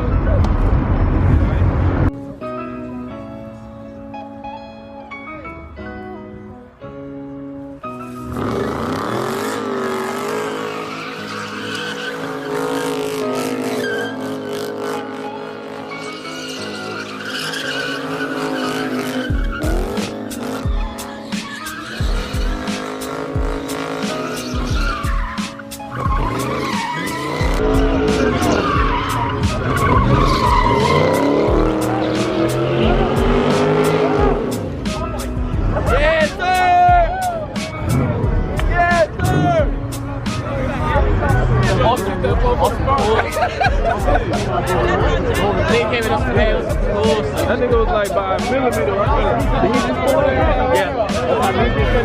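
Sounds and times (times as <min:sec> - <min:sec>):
car engine revving high: 0:08.3 - 0:21.0, 0:21.9 - 0:25.2, 0:26.0 - 0:34.8
tyres squealing: 0:08.3 - 0:34.6.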